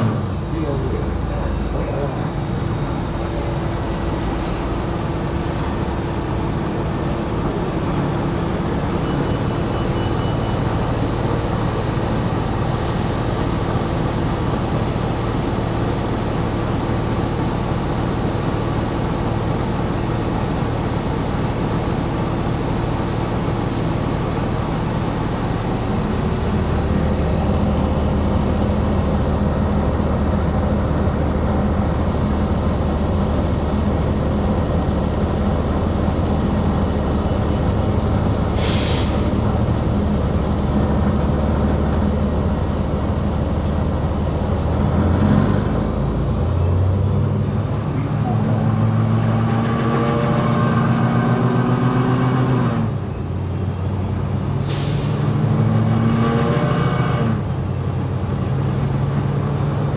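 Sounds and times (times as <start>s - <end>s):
bus engine drone: 0.0s - 59.9s
road noise: 0.0s - 59.9s.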